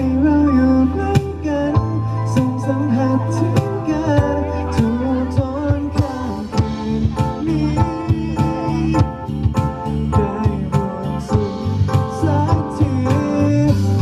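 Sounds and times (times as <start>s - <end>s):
band with bass and drums: 0.0s - 14.0s
man singing pop song: 0.0s - 14.0s.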